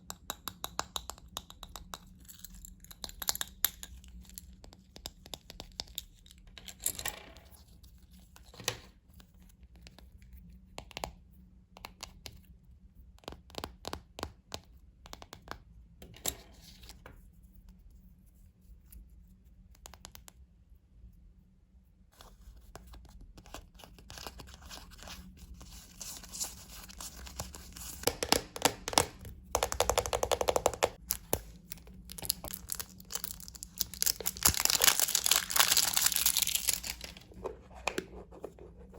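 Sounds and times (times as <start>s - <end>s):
wrapping crinkling and tearing: 31.0s - 37.4s.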